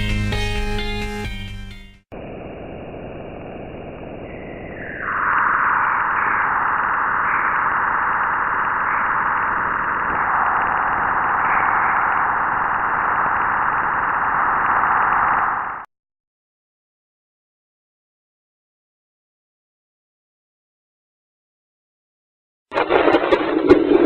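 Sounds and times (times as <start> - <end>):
dense steady hissing rush: 2.2 - 15.8.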